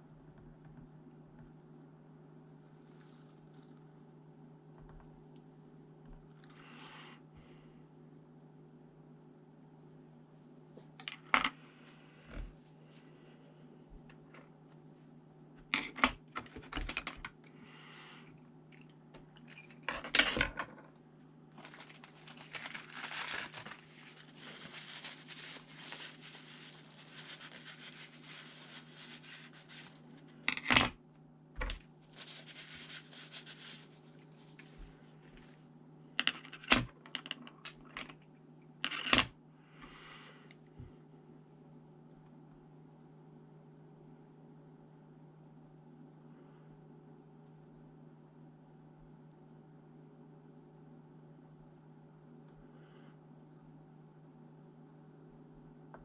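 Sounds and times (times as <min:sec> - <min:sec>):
steady low hum: 0:00.0 - 0:56.0
rubbing or scraping: 0:21.6 - 0:30.4, 0:32.1 - 0:35.4.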